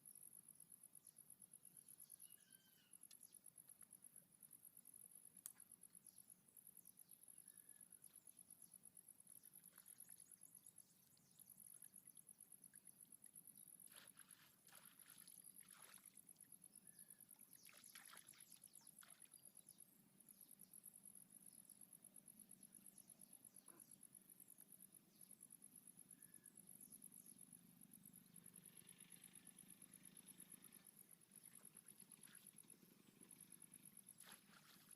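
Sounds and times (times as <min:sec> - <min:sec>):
high-pitched insect chirping: 0:01.8 - 0:03.6.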